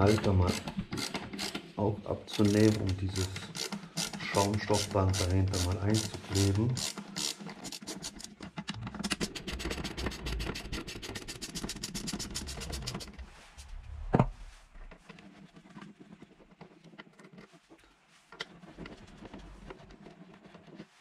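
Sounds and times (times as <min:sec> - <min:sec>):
ratchet tool clicking: 0:06.8 - 0:08.3.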